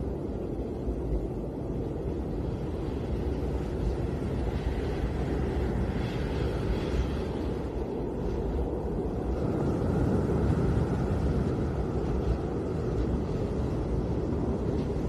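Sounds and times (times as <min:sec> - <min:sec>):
snowstorm wind rushing: 0:00.0 - 0:15.0.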